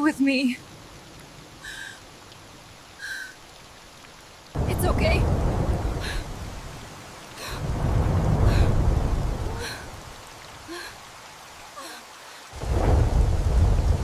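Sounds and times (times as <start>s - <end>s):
rain falling: 0.0s - 14.0s
thunder rumbling: 4.5s - 10.9s, 12.6s - 14.0s.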